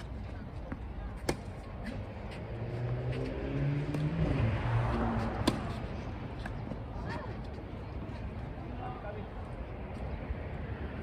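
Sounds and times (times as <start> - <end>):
vehicle engine passing: 1.8 - 6.4.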